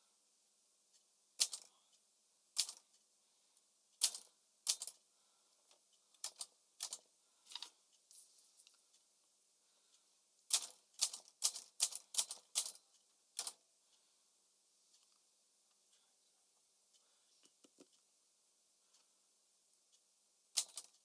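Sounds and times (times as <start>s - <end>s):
manual typewriter keystrokes: 1.4s - 1.7s, 2.6s - 2.8s, 4.0s - 5.0s, 6.2s - 7.0s, 10.5s - 12.8s, 13.4s - 13.6s, 20.6s - 21.0s.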